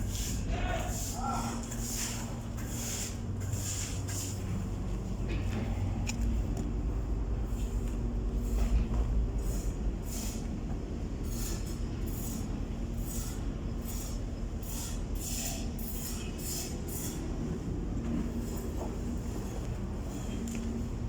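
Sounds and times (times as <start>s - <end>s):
short hissing scraping strokes: 0.0s - 4.5s, 9.4s - 10.4s
machinery rumbling: 3.2s - 11.3s.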